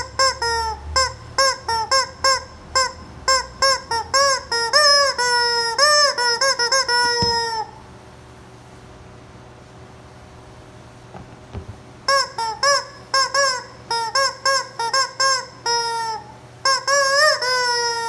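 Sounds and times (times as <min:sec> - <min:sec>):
rubber chicken toy squawking: 0:00.0 - 0:07.8, 0:12.1 - 0:18.0.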